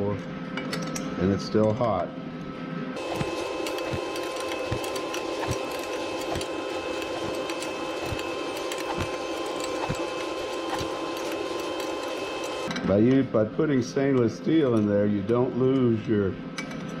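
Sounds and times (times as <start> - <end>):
welder arc buzzing: 3.0 - 12.7.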